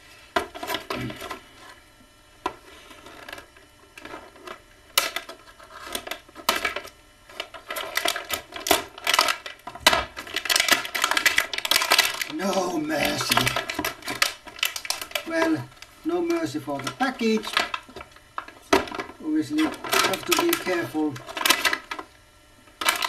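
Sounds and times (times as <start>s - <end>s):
plastic packaging crackling: 4.0s - 22.1s.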